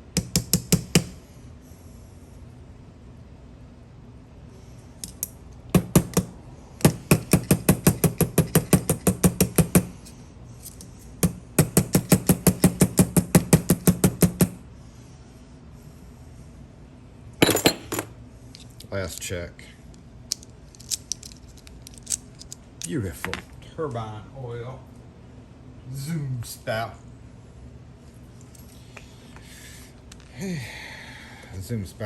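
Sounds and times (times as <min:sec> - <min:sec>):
small hammer tapping on metal: 0:00.2 - 0:01.1, 0:05.0 - 0:09.9, 0:11.2 - 0:14.6
metal parts scraping rattle: 0:20.3 - 0:23.0.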